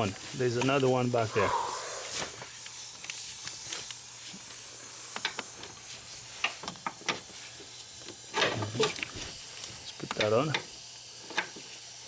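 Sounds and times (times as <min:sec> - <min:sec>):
compressed air hissing: 0:00.0 - 0:06.6.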